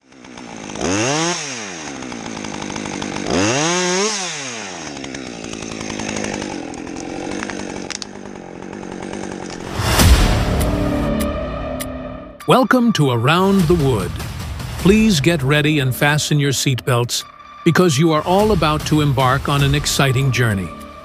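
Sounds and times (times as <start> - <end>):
chainsaw engine revving: 0.0 - 10.8, 18.2 - 21.0
loud low thud: 9.6 - 11.8.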